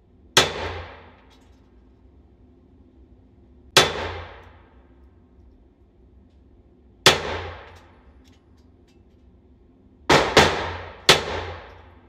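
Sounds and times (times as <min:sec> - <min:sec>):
gunshots echoing: 0:00.4 - 0:01.2, 0:03.8 - 0:04.7, 0:07.1 - 0:07.8, 0:10.1 - 0:12.0.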